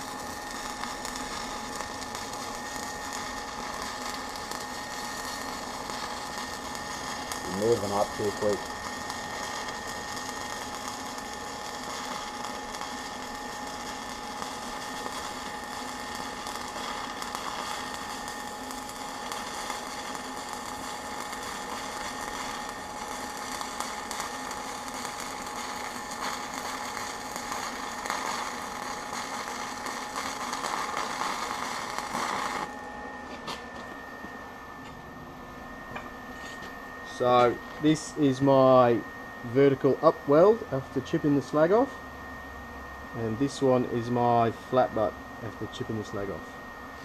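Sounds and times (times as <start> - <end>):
welding arc crackling and hissing: 0.0 - 34.4, 36.3 - 41.9, 43.1 - 46.4
steady high hum: 0.0 - 47.0.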